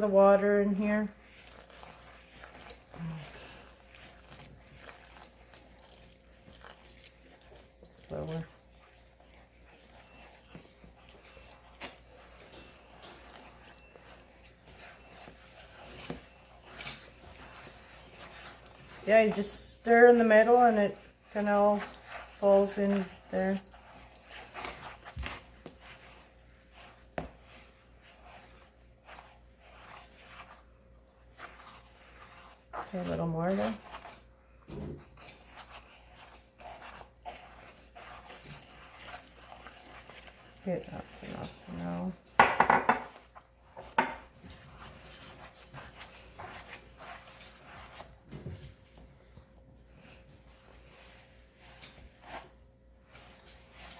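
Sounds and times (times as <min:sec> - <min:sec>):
spoon scraping dough in bowl: 0:00.0 - 0:48.7, 0:50.5 - 0:53.9
utensil knocking bowl: 0:42.4 - 0:43.2.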